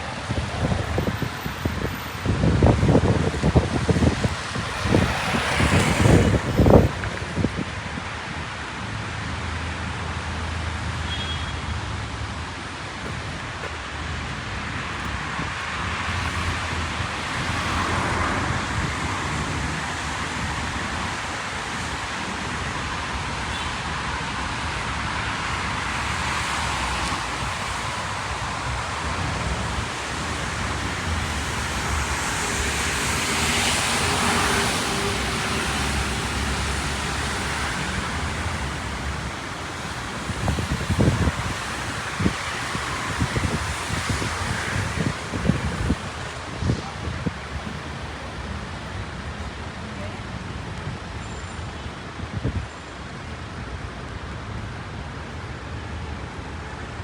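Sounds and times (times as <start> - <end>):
rain hissing: 0.0 - 7.5
cars passing on wet street: 0.0 - 57.0.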